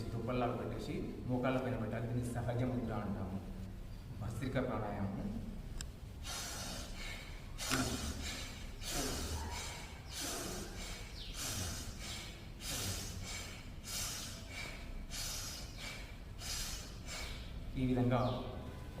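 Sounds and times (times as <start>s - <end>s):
forceful breathing through nose: 6.2s - 17.7s.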